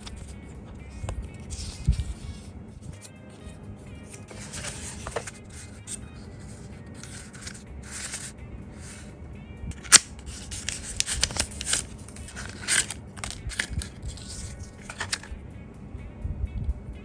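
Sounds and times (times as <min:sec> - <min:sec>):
quiet background music: 0:00.0 - 0:17.0
packaging crinkling and rustling: 0:01.0 - 0:02.4, 0:04.0 - 0:06.0, 0:07.0 - 0:08.3, 0:09.8 - 0:15.3.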